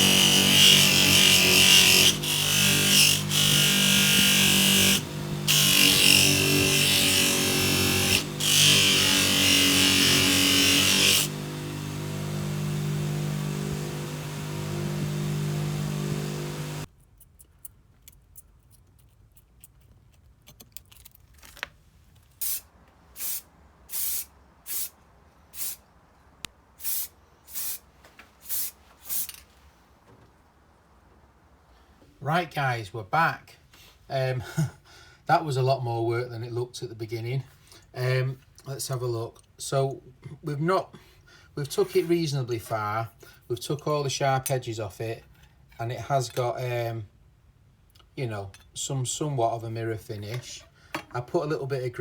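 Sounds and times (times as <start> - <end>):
power polisher on steel: 0.0 - 16.9.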